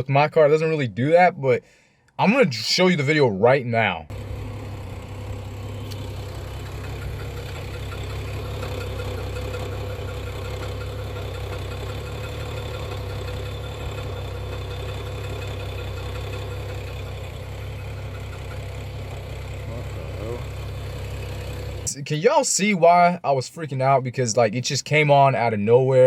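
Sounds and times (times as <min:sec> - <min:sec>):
rapid steady ticking: 0:04.1 - 0:22.0
car engine idling: 0:04.1 - 0:23.2.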